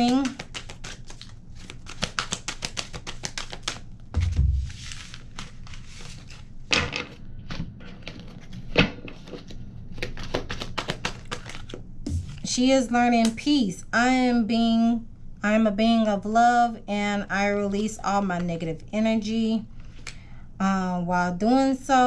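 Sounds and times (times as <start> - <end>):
cards being shuffled: 0.0 - 11.8.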